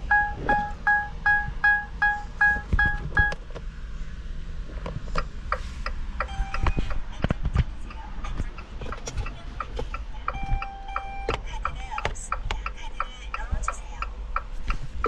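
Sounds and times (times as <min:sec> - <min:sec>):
rapid electronic beeping: 0:00.0 - 0:03.4, 0:06.2 - 0:07.2, 0:07.8 - 0:13.3.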